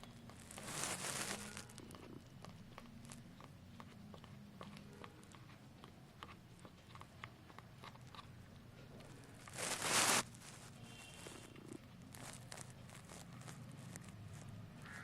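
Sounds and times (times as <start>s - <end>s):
kittens purring: 0.0s - 14.8s
kittens nibbling clicks: 1.7s - 8.4s.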